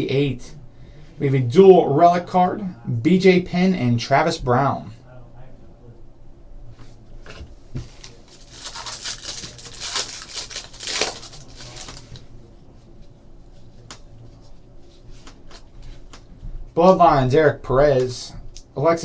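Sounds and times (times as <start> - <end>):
wrapper tearing and crinkling: 8.0 - 12.2
light clicks of cards handled: 15.2 - 16.3.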